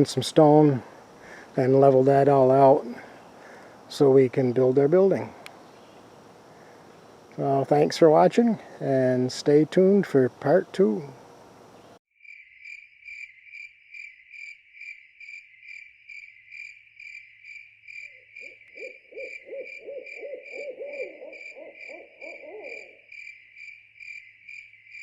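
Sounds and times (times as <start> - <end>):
insect chirping: 0.0 - 9.3, 10.3 - 25.0
low trilled animal call: 18.4 - 23.1.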